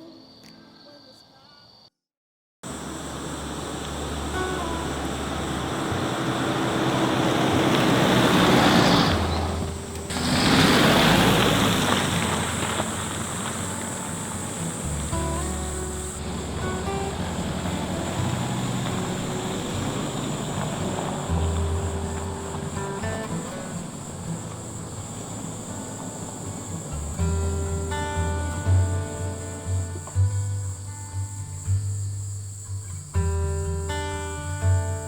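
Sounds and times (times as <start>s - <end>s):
vehicles passing on road: 2.6s - 32.6s
steady high hiss: 2.6s - 35.0s
plucked guitar-like notes: 13.7s - 25.0s.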